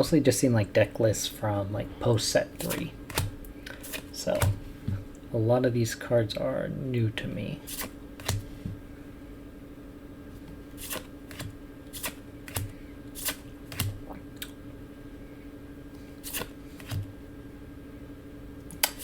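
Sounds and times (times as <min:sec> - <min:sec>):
faint steady hum: 0:00.0 - 0:19.0
cards snapping and sliding: 0:02.6 - 0:04.6, 0:07.7 - 0:08.5, 0:10.8 - 0:14.5, 0:16.2 - 0:17.1, 0:18.7 - 0:19.0.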